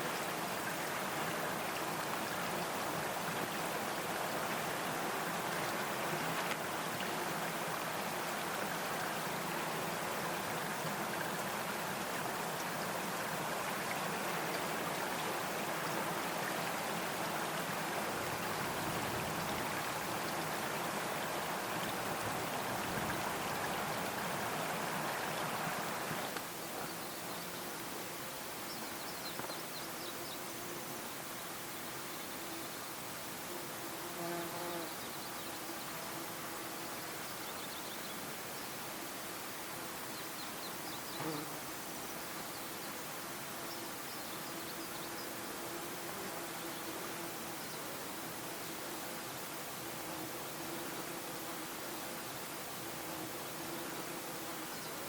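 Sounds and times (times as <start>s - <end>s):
stream water babbling: 0.0s - 34.0s, 34.9s - 55.0s.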